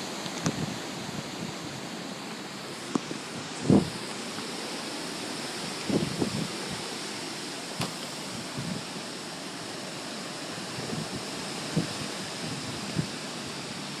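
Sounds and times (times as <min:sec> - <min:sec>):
wind and rain rushing: 0:00.0 - 0:14.0
wind bumps on microphone: 0:03.4 - 0:04.0, 0:05.8 - 0:06.8, 0:07.8 - 0:08.9.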